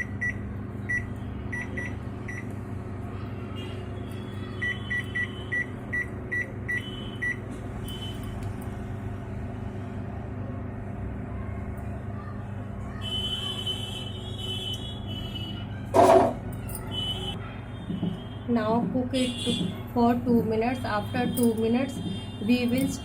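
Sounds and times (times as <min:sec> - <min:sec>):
microwave keypad beeps: 0:00.0 - 0:02.5, 0:04.6 - 0:07.4.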